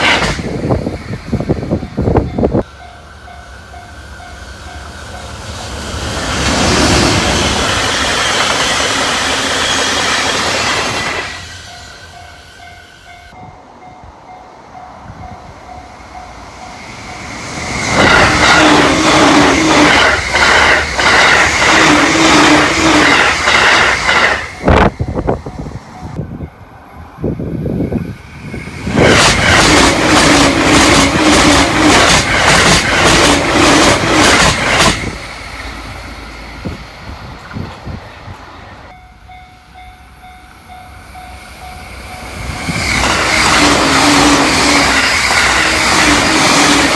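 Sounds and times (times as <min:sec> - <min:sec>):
train passing at high speed: 0:00.0 - 0:46.9
train wheels clacking on rail joints: 0:04.3 - 0:11.6, 0:17.2 - 0:26.2, 0:28.7 - 0:36.0, 0:42.3 - 0:46.9
level crossing warning bell: 0:38.9 - 0:42.7.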